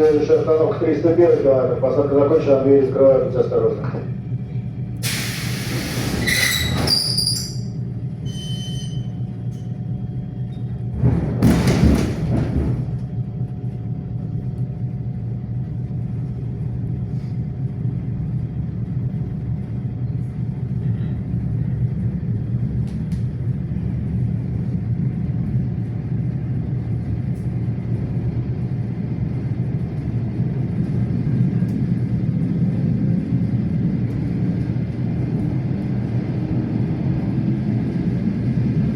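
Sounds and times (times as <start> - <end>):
train wheels rumbling on rails: 0.0 - 38.9
train motor whine: 3.5 - 9.8
train door hiss and clatter: 5.0 - 9.7, 10.9 - 13.0
doors closing thump: 11.0 - 13.0.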